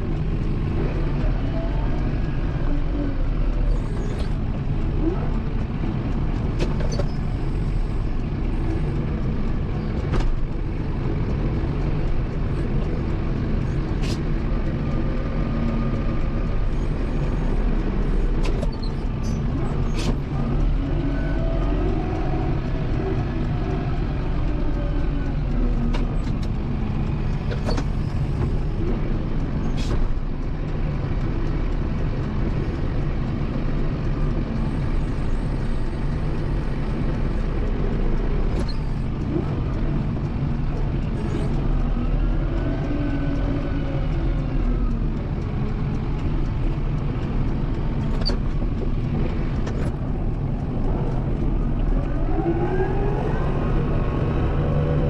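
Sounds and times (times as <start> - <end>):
tractor diesel engine running: 0.0 - 55.0.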